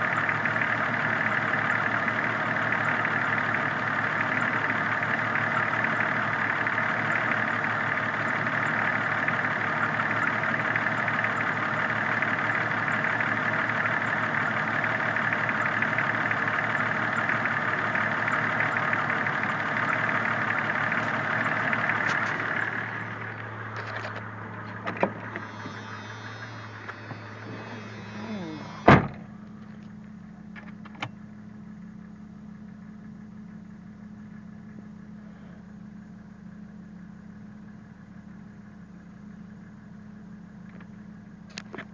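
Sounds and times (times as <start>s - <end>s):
car engine idling: 0.0s - 41.9s
muffled low hum: 19.2s - 38.0s.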